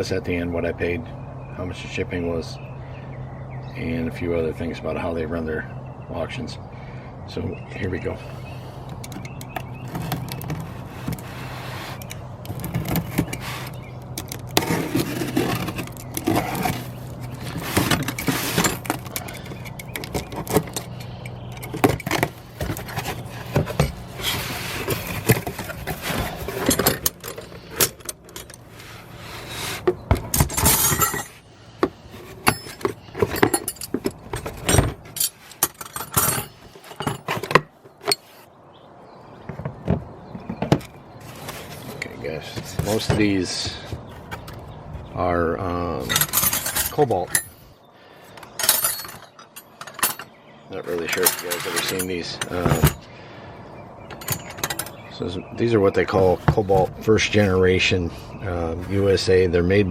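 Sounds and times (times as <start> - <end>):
metal wrenches clinking: 8.8 - 38.4, 40.4 - 44.6, 45.9 - 53.0, 54.1 - 55.4.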